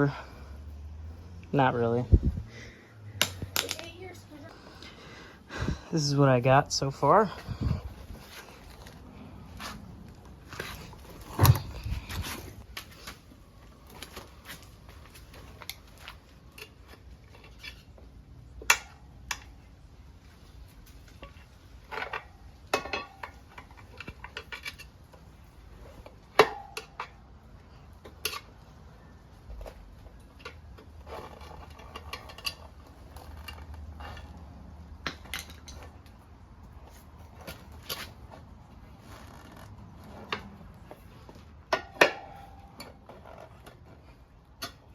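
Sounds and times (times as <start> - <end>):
screwdrivers clinking on wheel rim: 20.8 - 27.3, 29.6 - 36.2, 39.1 - 44.9.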